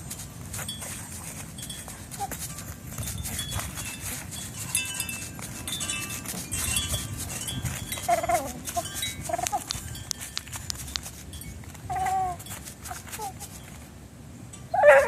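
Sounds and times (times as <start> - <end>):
light metallic jingling: 0.0 - 14.8
animal whining: 7.9 - 9.8, 11.9 - 13.4, 14.7 - 15.0.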